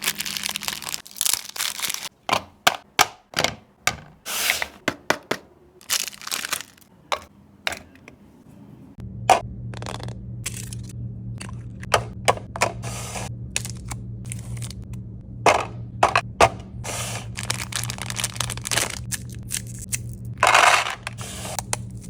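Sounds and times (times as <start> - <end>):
chocolate snapping and crunching: 0.0 - 2.1, 5.8 - 6.9, 17.4 - 20.3
crackling rustles: 0.0 - 2.1, 17.0 - 20.0
low hum: 8.3 - 22.0.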